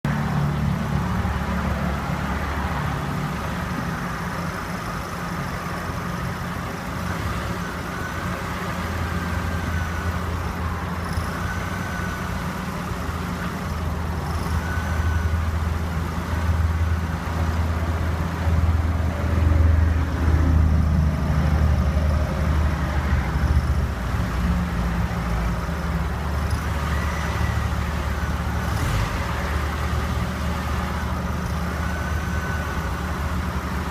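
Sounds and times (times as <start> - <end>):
car engine running: 0.0 - 19.2.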